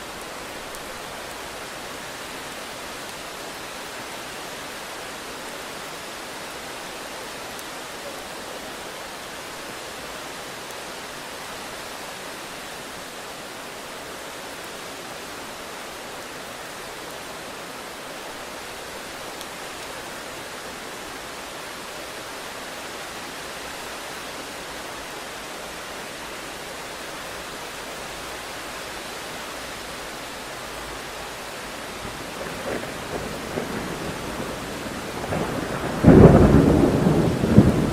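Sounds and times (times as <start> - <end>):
heavy rain: 0.0 - 37.9
thunder rumble: 32.0 - 37.9.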